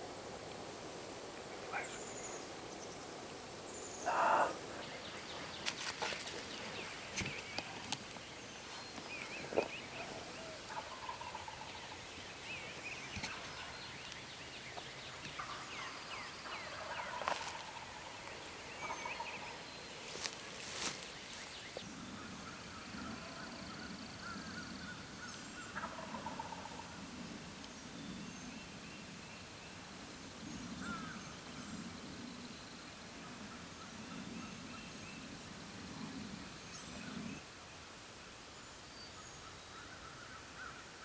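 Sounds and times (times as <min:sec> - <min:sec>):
turkeys gobbling: 0:04.0 - 0:05.5, 0:09.0 - 0:12.1, 0:15.3 - 0:19.6, 0:25.8 - 0:26.9.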